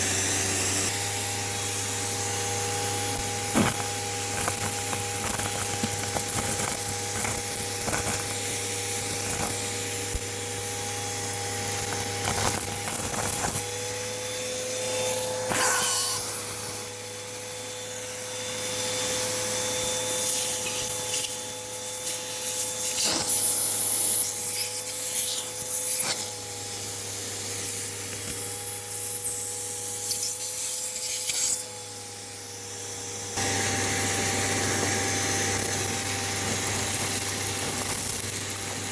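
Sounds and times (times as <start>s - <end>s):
upright vacuum cleaner running: 0.0s - 30.1s, 31.0s - 38.9s
small clicks: 3.1s - 10.3s, 11.3s - 13.8s.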